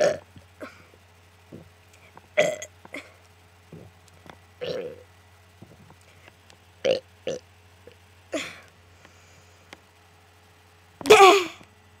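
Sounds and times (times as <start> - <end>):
girl burping: 0.0 - 0.9, 2.4 - 3.1, 8.4 - 8.7, 11.0 - 11.6.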